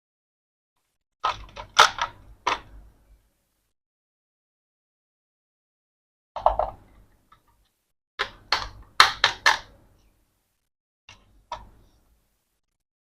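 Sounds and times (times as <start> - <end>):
hard plastic clicks and knocks: 8.2 - 9.8.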